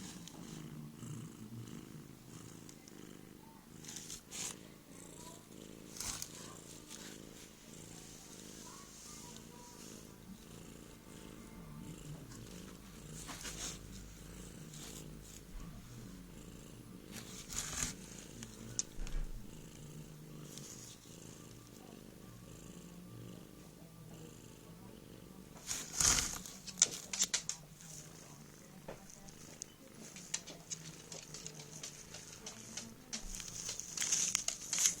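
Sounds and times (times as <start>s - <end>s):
cat purring: 0.0s - 35.0s
rustling and clicking: 5.9s - 10.0s, 17.1s - 19.7s, 25.6s - 35.0s.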